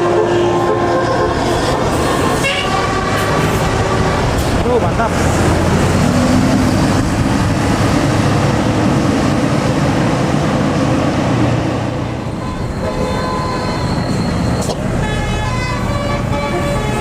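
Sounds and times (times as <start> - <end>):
bus engine rumble: 0.0 - 17.0
road noise: 0.0 - 17.0.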